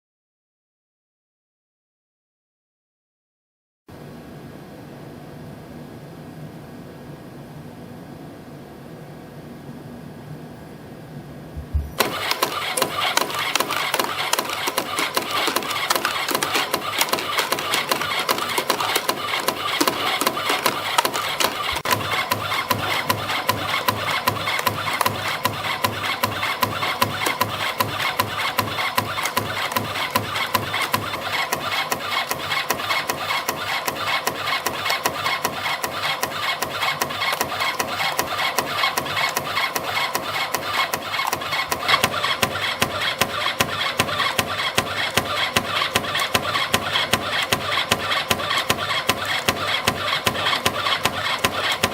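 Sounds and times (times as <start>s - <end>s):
spring coiling machine clattering: 12.0s - 51.9s.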